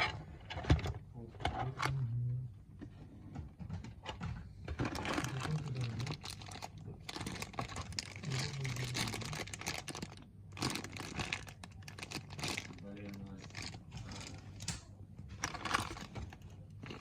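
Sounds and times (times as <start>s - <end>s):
plastic packaging crinkling: 4.8s - 14.8s, 15.4s - 17.0s.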